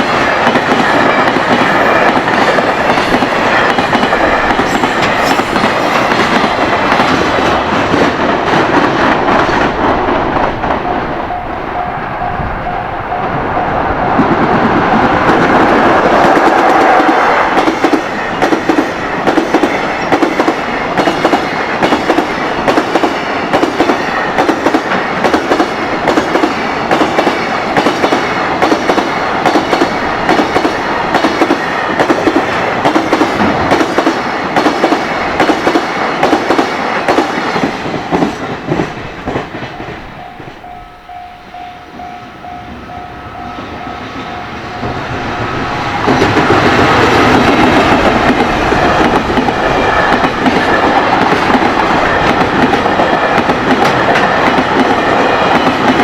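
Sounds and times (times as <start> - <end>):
locomotive passing: 0.0 - 56.0
level crossing warning bell: 10.4 - 14.4, 39.4 - 47.2.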